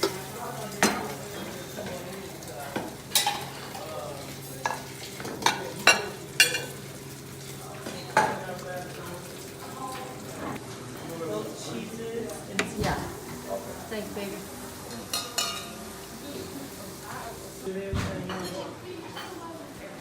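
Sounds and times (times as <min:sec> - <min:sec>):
cutlery and dishes clinking: 0:02.7 - 0:06.8, 0:14.9 - 0:15.8.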